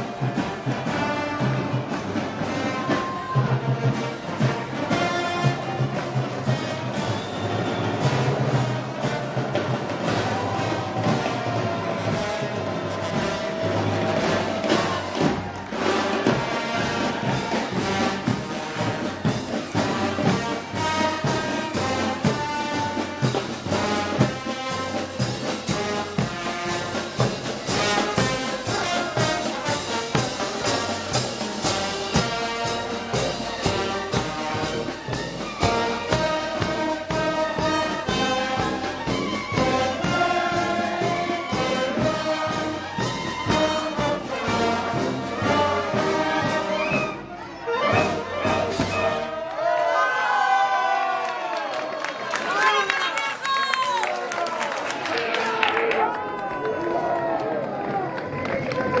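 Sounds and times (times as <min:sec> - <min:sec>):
steady drum beat: 0:00.0 - 0:49.4
brass band playing: 0:00.0 - 0:51.5.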